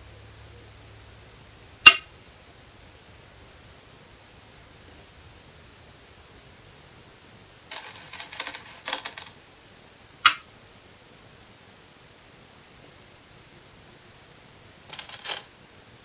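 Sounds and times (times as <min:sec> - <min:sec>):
glass stones clicking together: 0:07.7 - 0:09.3, 0:14.9 - 0:15.5.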